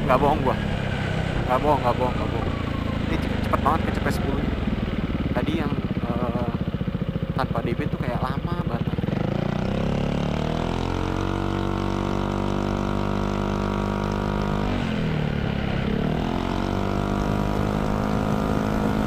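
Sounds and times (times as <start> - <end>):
scooter engine accelerating: 0.0 - 19.0.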